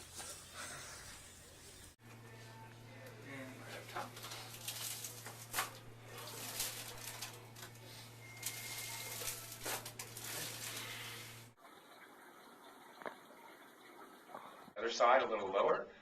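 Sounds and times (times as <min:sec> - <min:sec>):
low electrical hum: 0:00.0 - 0:15.8
rustling handling sounds: 0:02.4 - 0:11.6.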